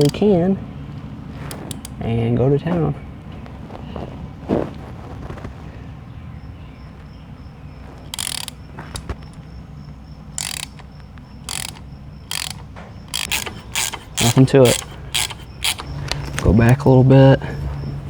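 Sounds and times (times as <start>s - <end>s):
tap rasping squeaks cutting metal: 0.0s - 0.2s, 8.0s - 9.5s, 10.4s - 16.8s.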